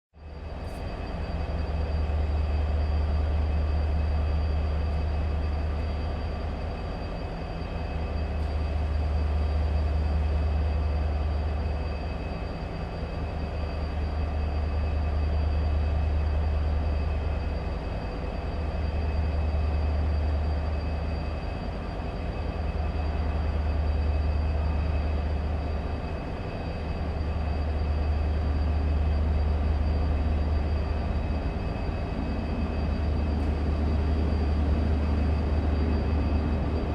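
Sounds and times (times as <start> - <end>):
faint high whine: 0.2 - 36.9
train running close by: 0.2 - 36.9.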